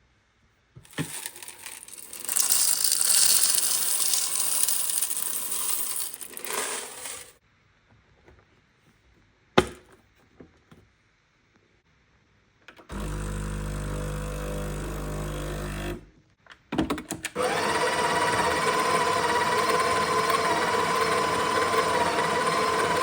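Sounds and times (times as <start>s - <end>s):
coffee grinder grinding beans: 0.9s - 7.4s, 12.9s - 16.0s, 17.4s - 23.0s.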